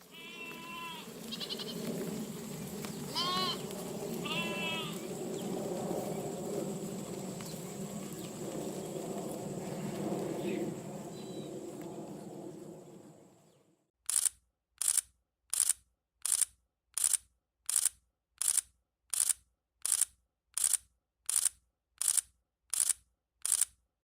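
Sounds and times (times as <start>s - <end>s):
outdoor ambience: 0.0s - 23.8s
sharp high double clicks: 14.0s - 23.8s.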